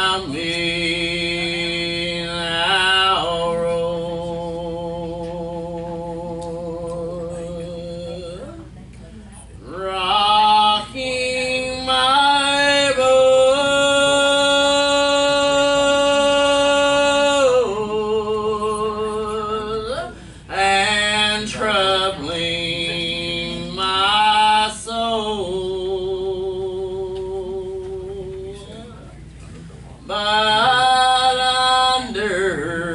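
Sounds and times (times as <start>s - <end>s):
person singing gospel song: 0.0s - 8.7s, 9.6s - 28.9s, 30.0s - 32.9s
singer breathing: 20.1s - 20.5s.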